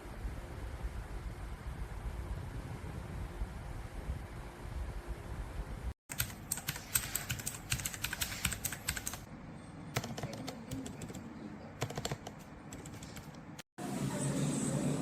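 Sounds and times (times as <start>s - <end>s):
mechanical keyboard typing: 6.1s - 9.3s, 10.0s - 11.2s, 11.8s - 13.4s.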